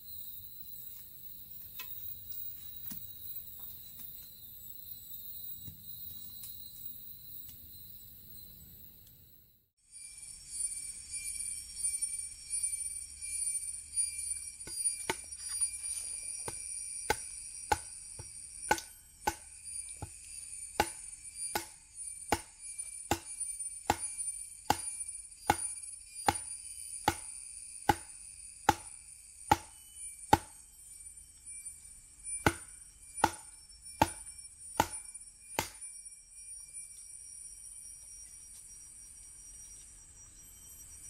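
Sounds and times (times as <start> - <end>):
chopping strikes: 16.4 - 20.2, 20.8 - 30.6, 32.4 - 35.9.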